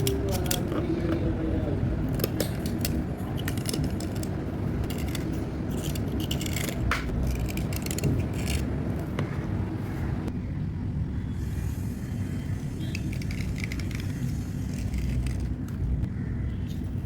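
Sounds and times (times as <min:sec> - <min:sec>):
slate pencils clicking and scraping: 0:00.0 - 0:01.3, 0:02.0 - 0:09.2, 0:12.8 - 0:15.9
steady low rumble: 0:00.0 - 0:17.0.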